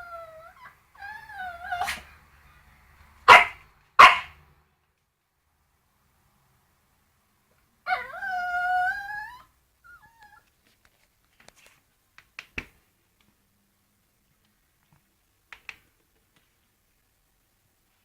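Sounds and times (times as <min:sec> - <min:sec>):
dog whimpering: 0:00.0 - 0:02.1
dog whining: 0:00.0 - 0:02.1, 0:07.9 - 0:10.4.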